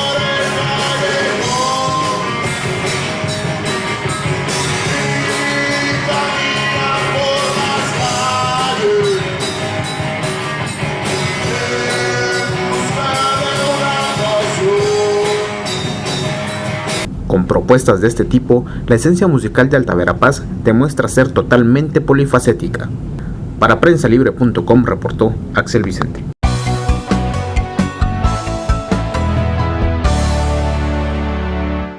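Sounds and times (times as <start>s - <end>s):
person singing: 0.0s - 2.9s, 4.5s - 9.8s, 11.1s - 16.0s
rock band playing: 0.0s - 17.1s, 26.4s - 31.9s.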